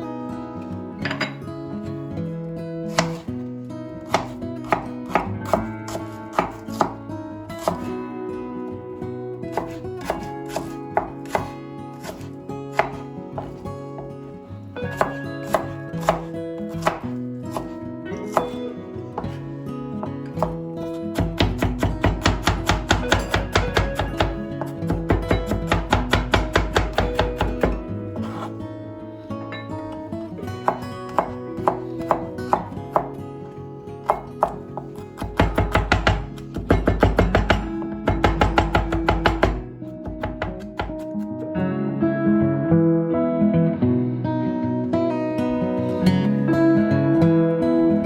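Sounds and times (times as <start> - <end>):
background guitar music: 0.0 - 48.0
knife chopping on cutting board: 2.9 - 3.3, 4.1 - 7.0, 7.6 - 7.9, 9.5 - 14.1, 14.9 - 18.6, 19.2 - 19.4, 20.0 - 20.6, 21.2 - 28.5, 30.6 - 33.1, 34.0 - 41.4.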